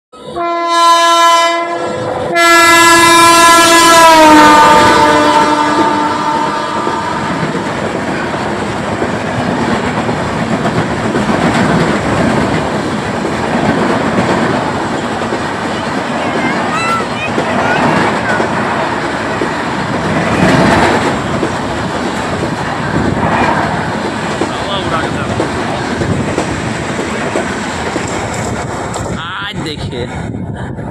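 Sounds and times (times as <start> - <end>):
train horn blasts: 0.3 - 7.4
train clattering on rails: 4.2 - 30.9.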